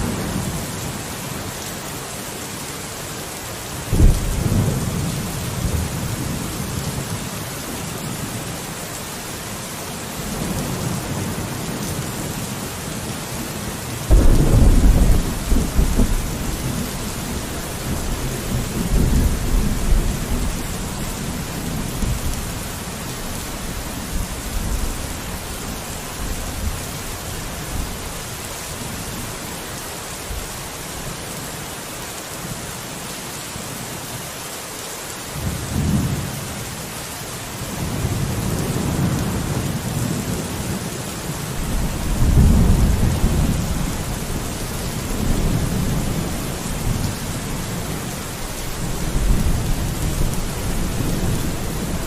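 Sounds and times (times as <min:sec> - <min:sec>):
rain on a window: 0:00.0 - 0:52.0
thunder rumbling: 0:03.9 - 0:07.0, 0:14.1 - 0:28.1, 0:41.6 - 0:52.0.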